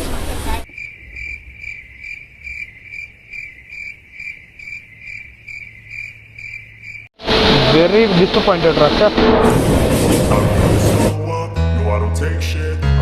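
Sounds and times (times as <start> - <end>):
cricket chirping: 0.6 - 7.1.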